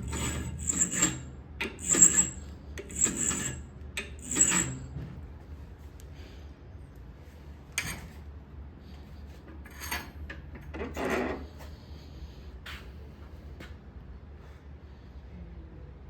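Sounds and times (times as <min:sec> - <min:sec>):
hand file scraping steel: 0:00.0 - 0:04.9.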